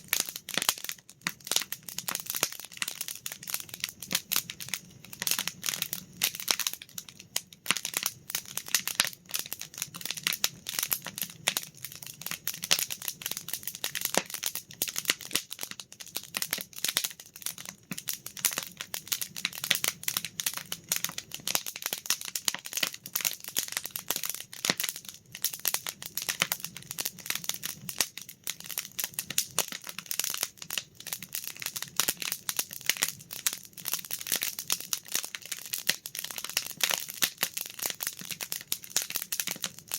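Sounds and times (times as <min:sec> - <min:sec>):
campfire crackling: 0:00.0 - 0:39.9.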